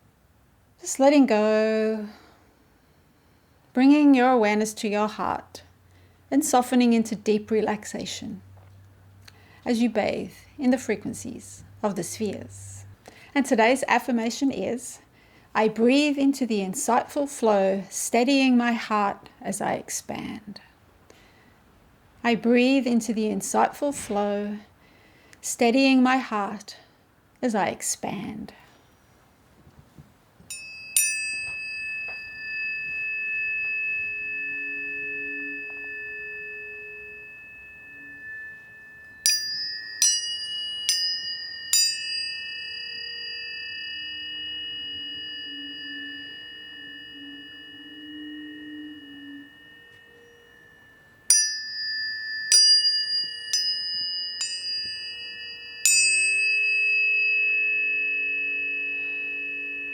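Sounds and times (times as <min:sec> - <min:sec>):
tuning forks ringing: 0:30.5 - 0:59.9.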